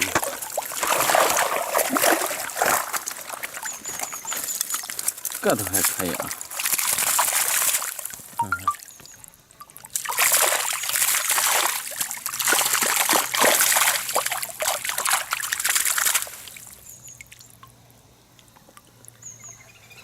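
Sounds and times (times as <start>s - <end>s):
fish thrashing and splashing water: 0.0s - 8.3s, 9.8s - 16.8s.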